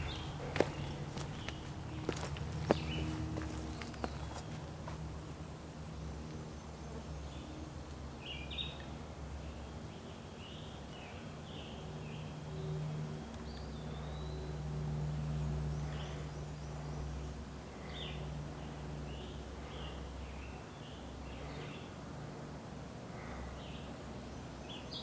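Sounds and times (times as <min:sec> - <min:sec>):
small birds chirping: 0:00.0 - 0:05.1, 0:15.6 - 0:22.0
low steady hum: 0:00.0 - 0:25.0.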